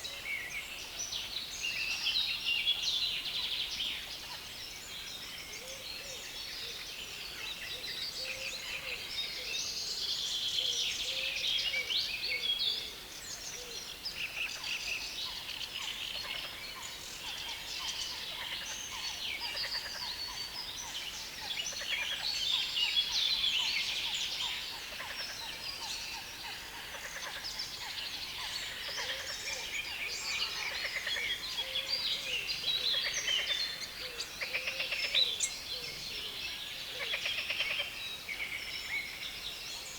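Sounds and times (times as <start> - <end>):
birds chattering songs: 1.1 - 39.9.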